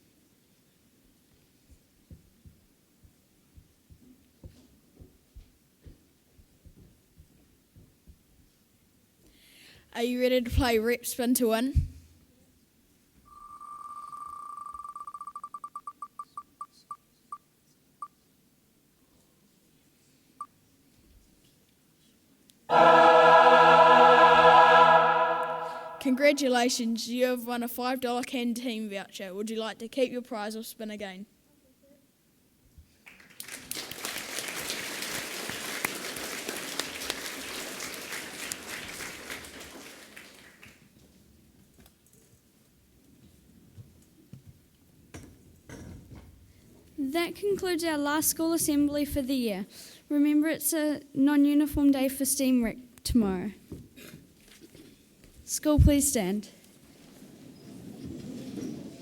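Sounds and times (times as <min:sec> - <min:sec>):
audience applauding: 0:33.1 - 0:40.8.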